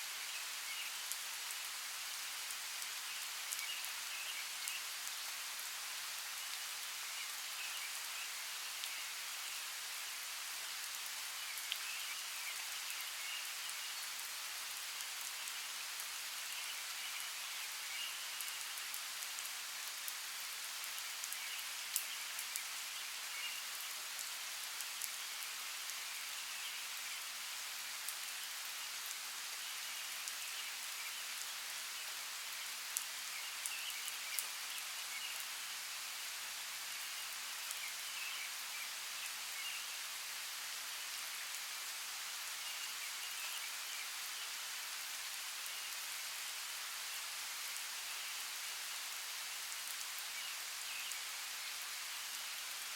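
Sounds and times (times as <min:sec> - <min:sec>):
steady rain hissing: 0:00.0 - 0:52.9
raindrops striking close by: 0:00.1 - 0:52.9.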